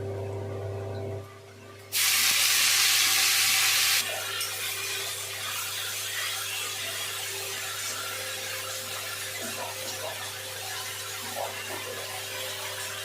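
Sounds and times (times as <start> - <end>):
low hum: 0.0 - 1.6
food sizzling in hot oil: 1.9 - 13.0.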